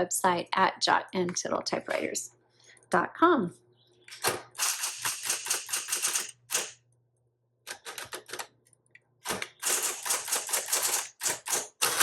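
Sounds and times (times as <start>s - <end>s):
typewriter motor hum: 4.6s - 6.8s, 9.3s - 12.0s
typewriter keystrokes: 9.3s - 12.0s.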